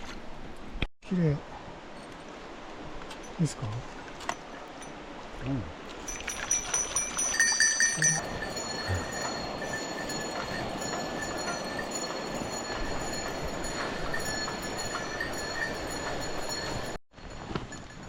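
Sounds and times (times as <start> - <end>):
stream water rushing: 1.6 - 16.8
high ringing tones: 6.0 - 18.0.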